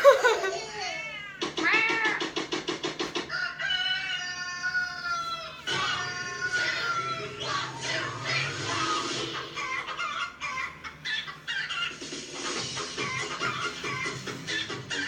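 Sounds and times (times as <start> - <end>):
cat meowing: 0.8 - 2.4.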